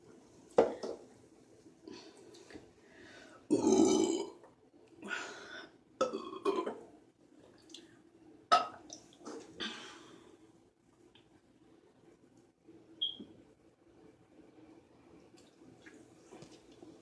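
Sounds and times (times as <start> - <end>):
woman burping: 3.5 - 4.4, 6.0 - 6.8.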